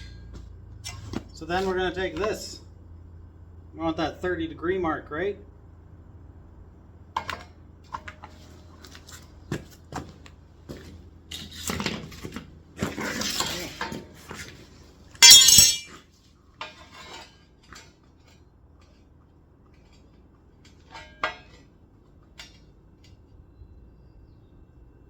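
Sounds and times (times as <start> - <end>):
metal tools clinking: 15.2 - 16.0
ringing metallic clatter: 15.2 - 16.0.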